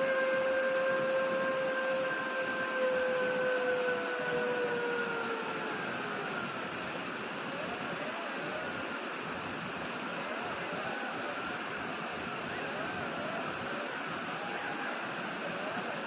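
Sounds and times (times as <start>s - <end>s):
wolves howling: 0.0s - 6.5s.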